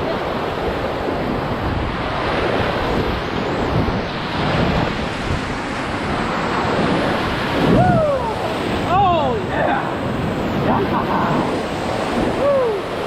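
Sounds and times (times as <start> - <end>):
whitewater rapids rushing: 0.0 - 13.0
wind buffeting microphone: 0.0 - 13.0.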